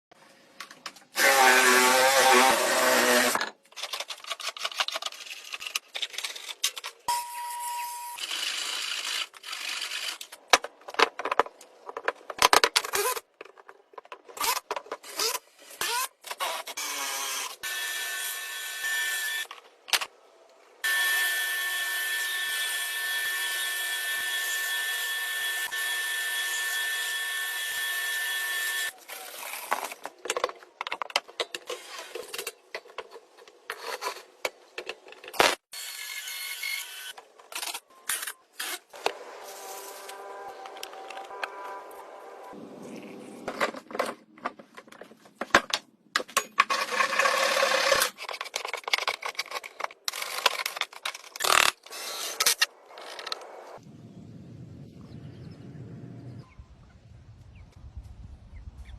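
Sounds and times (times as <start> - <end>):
small power tool motor: 1.2 - 3.4, 20.8 - 29.4.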